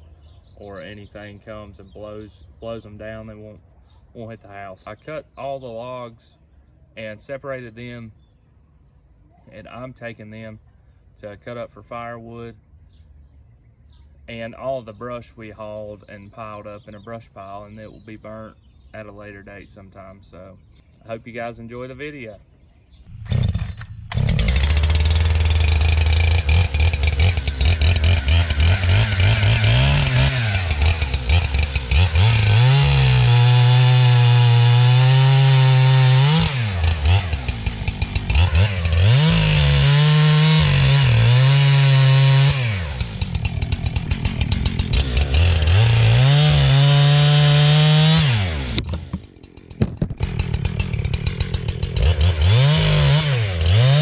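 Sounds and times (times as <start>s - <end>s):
chainsaw revving: 23.1s - 54.0s.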